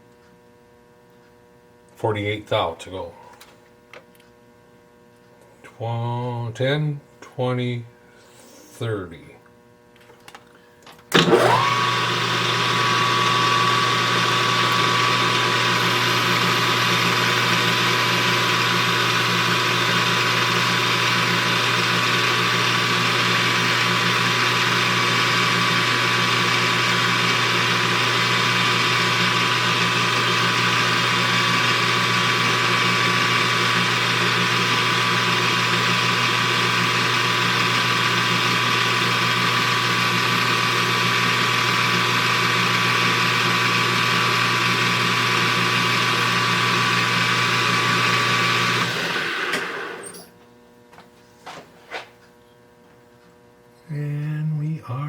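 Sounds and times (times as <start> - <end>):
metal lathe motor whining: 11.1 - 50.3
lathe tool cutting metal: 11.2 - 50.2.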